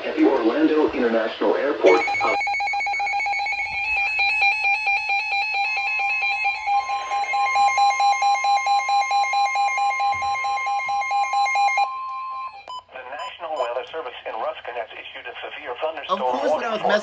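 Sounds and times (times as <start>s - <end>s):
warbling data tones: 1.8s - 12.6s
steady warning alarm tone: 1.9s - 12.8s.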